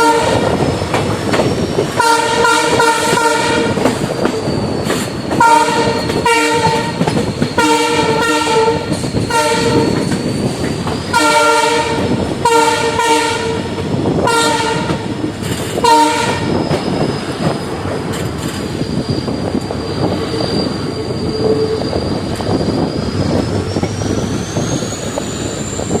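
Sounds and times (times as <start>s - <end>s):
locomotive horn honks: 0.0s - 0.4s, 2.0s - 3.8s, 5.4s - 6.9s, 7.6s - 9.9s, 11.1s - 13.7s, 14.3s - 15.1s, 15.8s - 16.6s
train wheels clattering on track: 0.0s - 26.0s.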